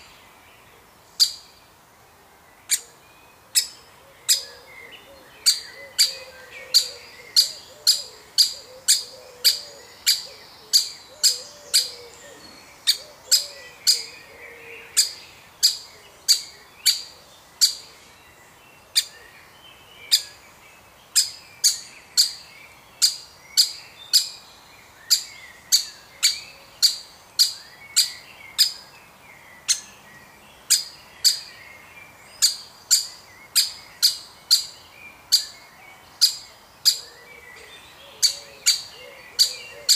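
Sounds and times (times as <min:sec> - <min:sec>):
woodpeckers calling: 0:03.6 - 0:04.7, 0:05.4 - 0:17.9, 0:30.6 - 0:31.5, 0:32.4 - 0:35.6, 0:36.2 - 0:39.9.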